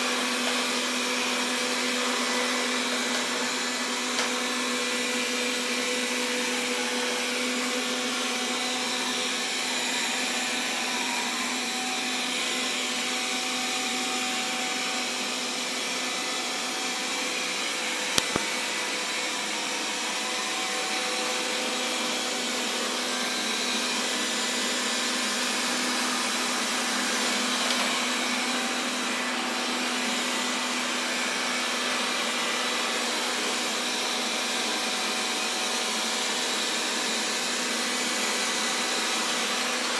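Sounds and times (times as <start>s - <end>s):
robot vacuum motor whirring: 18.2s - 18.6s.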